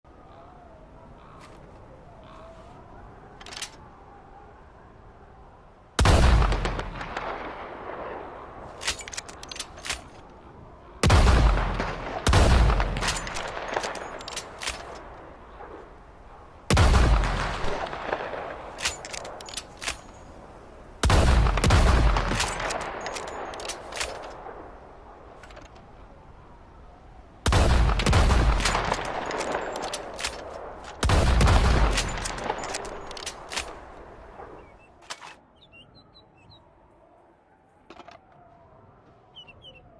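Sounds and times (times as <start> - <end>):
sharp clicks: 18.8 - 20.2
shotgun blasts: 21.0 - 24.2, 27.4 - 33.6.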